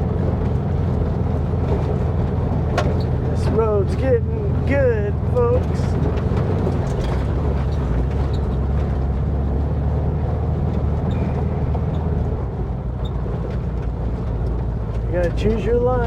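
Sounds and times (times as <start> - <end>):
van engine running: 0.0 - 16.0
knocks and rattles: 0.2 - 9.3.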